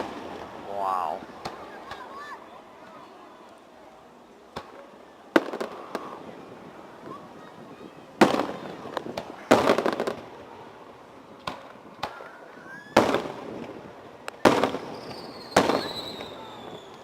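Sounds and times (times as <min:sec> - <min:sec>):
firework pops: 0:04.5 - 0:06.2, 0:08.2 - 0:10.3, 0:11.4 - 0:12.3, 0:13.0 - 0:17.0
firework booms: 0:08.2 - 0:10.3, 0:13.0 - 0:16.8
falling firework whistle: 0:12.5 - 0:13.3, 0:14.4 - 0:17.0.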